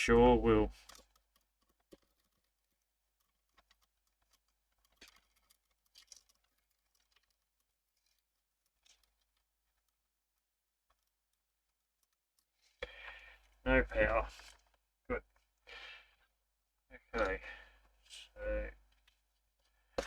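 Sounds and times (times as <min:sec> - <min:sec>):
faint clicks and taps: 0:00.1 - 0:13.7.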